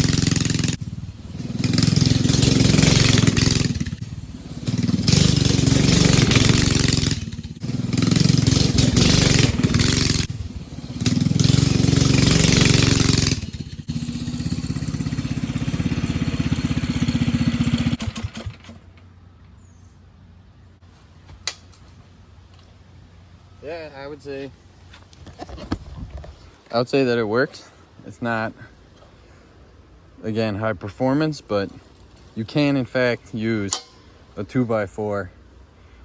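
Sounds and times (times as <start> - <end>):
small engine revving: 0.0 - 18.9.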